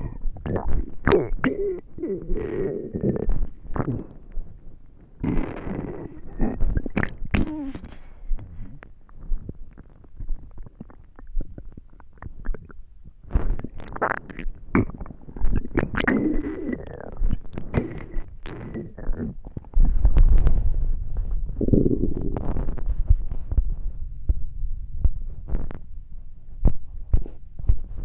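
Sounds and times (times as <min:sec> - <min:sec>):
stomach growling and gurgling: 0:00.0 - 0:28.0.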